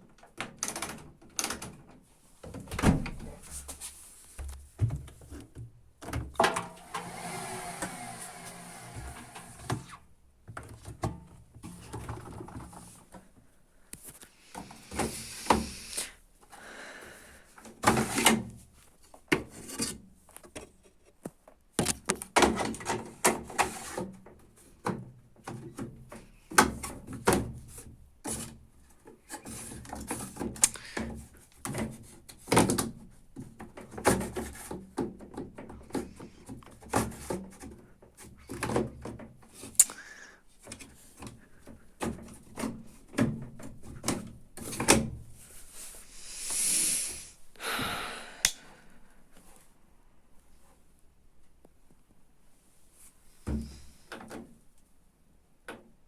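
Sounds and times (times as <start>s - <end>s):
door or drawer knocking and rubbing: 6.8s - 9.9s.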